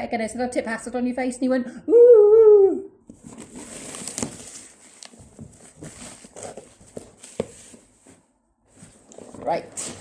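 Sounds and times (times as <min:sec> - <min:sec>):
packaging rustling and crackling: 0:03.1 - 0:10.0.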